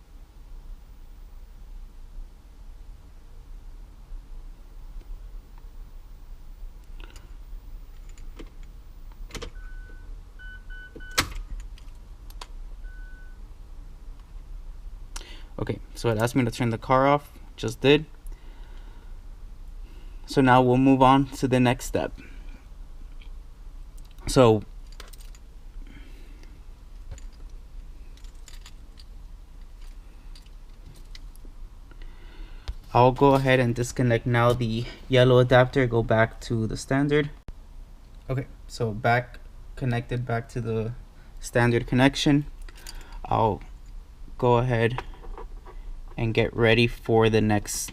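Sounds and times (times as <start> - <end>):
short electronic beeps: 12.8 - 13.4
handling noise: 26.4 - 31.6.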